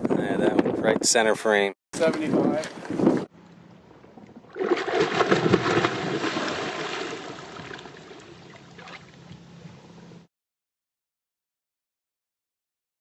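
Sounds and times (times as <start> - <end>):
water splashing against boat: 4.0 - 9.5.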